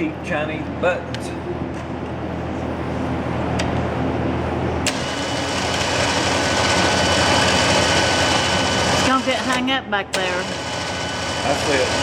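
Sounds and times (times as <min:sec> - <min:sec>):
electric winch motor whining: 0:04.8 - 0:12.0.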